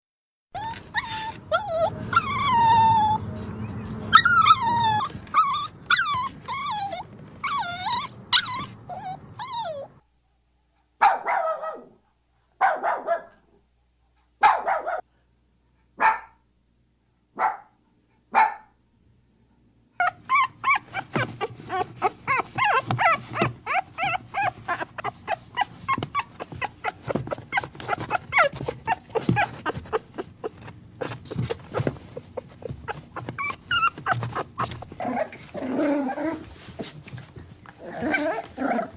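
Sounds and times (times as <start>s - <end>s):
puppies yipping: 0.6s - 9.9s, 20.0s - 37.2s
puppies whimpering: 0.6s - 10.0s, 20.0s - 38.6s.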